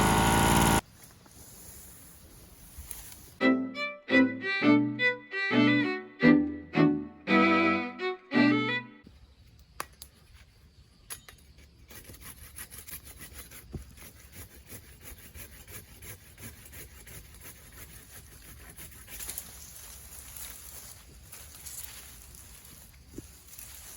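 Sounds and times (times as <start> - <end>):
insects trilling: 9.1 - 23.9.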